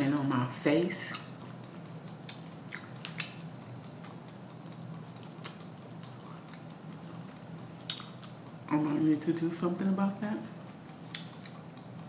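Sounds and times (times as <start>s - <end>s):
steady low hum: 0.0s - 12.0s
person chewing food: 1.1s - 8.6s, 11.0s - 11.9s.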